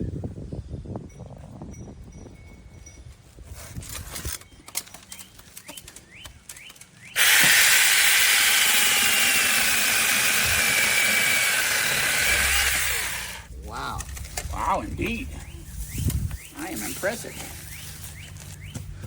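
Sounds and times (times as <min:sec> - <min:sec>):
mini chainsaw whining: 0:07.2 - 0:13.5.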